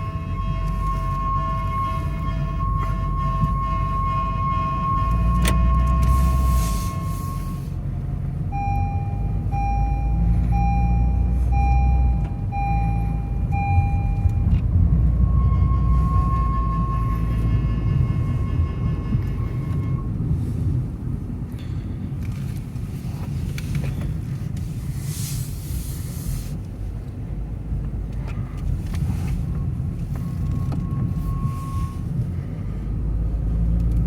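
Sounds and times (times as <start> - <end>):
car wheel screeching: 0.0 - 7.8, 13.8 - 20.8
engine and road rumble: 0.0 - 34.0.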